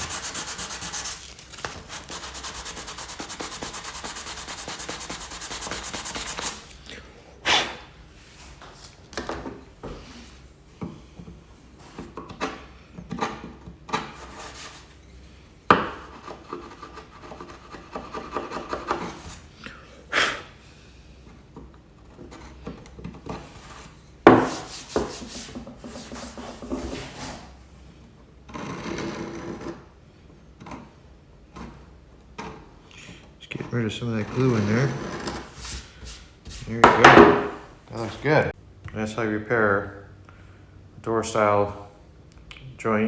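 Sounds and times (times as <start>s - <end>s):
hand tool scraping wood: 0.0s - 6.8s, 12.0s - 15.0s, 15.7s - 19.4s, 23.2s - 27.6s.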